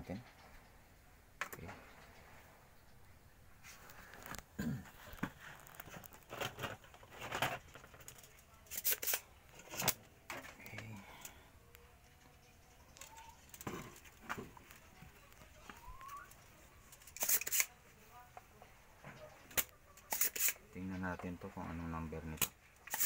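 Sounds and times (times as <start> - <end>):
hand tools clicking and scraping: 4.2 - 11.3, 15.7 - 17.7, 19.4 - 20.7, 22.4 - 23.0.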